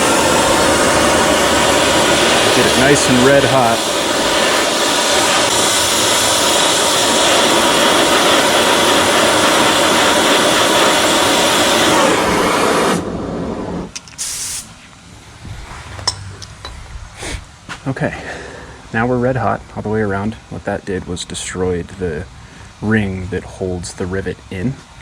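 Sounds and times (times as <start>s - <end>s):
blowtorch flame hissing: 0.0s - 17.8s.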